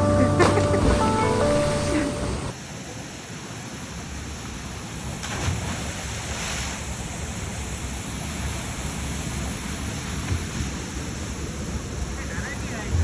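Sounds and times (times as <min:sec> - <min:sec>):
waterfall roaring: 0:00.0 - 0:03.5.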